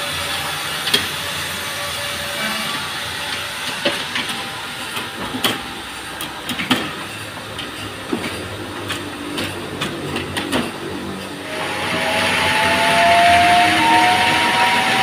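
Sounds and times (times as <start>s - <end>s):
sawmill machinery hum: 0.0s - 15.0s
sharp clacks and knocks: 3.3s - 11.4s.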